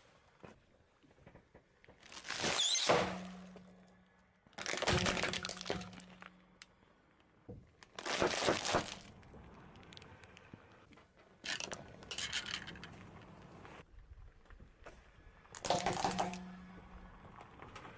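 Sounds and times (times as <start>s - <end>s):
things crushed under car tyre: 4.6s - 6.6s, 7.8s - 9.2s.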